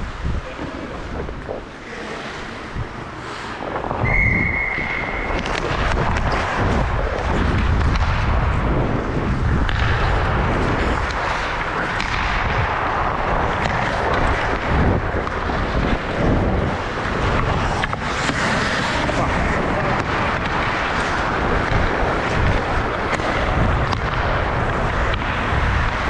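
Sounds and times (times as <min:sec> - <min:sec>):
wind buffeting microphone: 0:00.0 - 0:26.0
sharp hockey clacks: 0:02.2 - 0:26.0.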